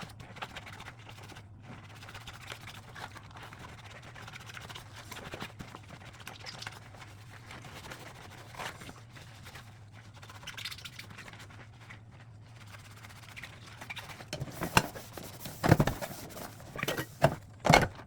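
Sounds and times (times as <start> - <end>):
dishes being scrubbed: 14.3 - 17.9.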